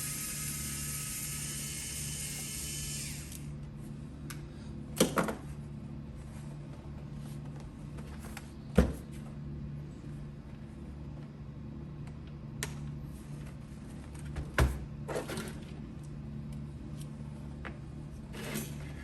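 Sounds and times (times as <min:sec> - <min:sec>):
cordless screwdriver whirring: 0:00.0 - 0:03.5.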